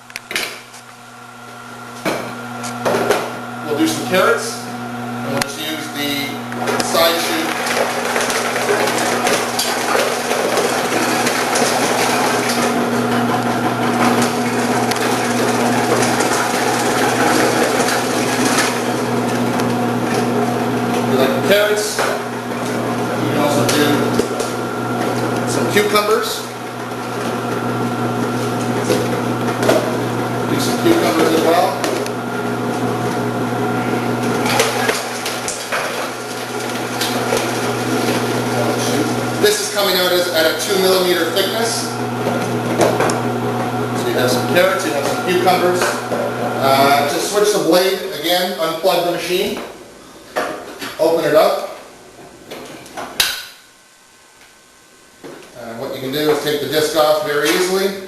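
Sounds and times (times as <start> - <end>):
vegetable cutter motor humming: 2.2 - 48.1.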